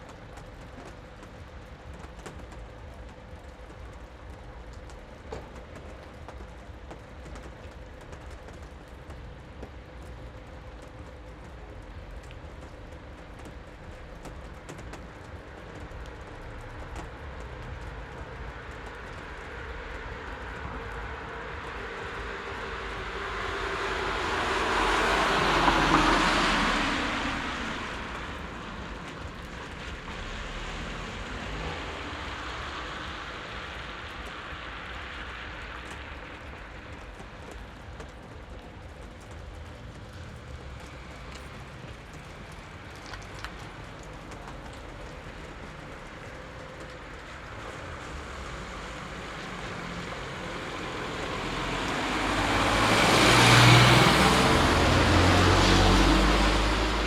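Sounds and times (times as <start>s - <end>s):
vehicle passing by: 17.2s - 36.6s, 46.5s - 57.0s.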